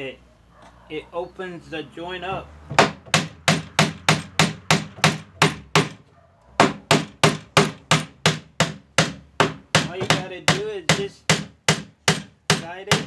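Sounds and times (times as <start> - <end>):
hammer tapping on wood: 2.3 - 6.0, 6.6 - 13.0.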